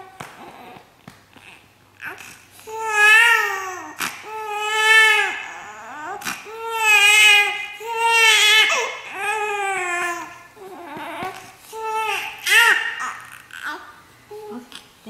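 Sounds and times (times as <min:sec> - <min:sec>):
infant crying: 0:00.0 - 0:14.7
infant breathing: 0:00.4 - 0:02.8.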